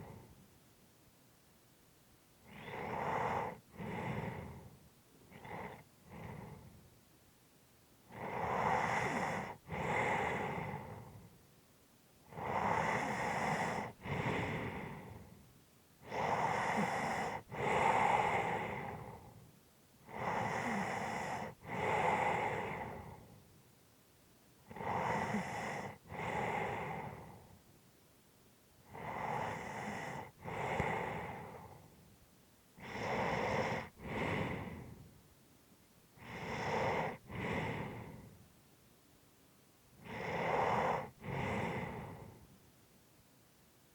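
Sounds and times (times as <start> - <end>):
person breathing heavily: 12.4 - 15.4, 20.1 - 23.4, 28.9 - 32.0, 32.8 - 35.1, 36.2 - 38.4, 40.0 - 42.5.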